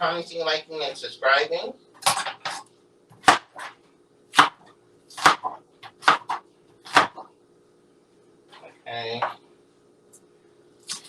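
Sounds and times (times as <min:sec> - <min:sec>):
knife chopping onion: 0:02.0 - 0:07.3.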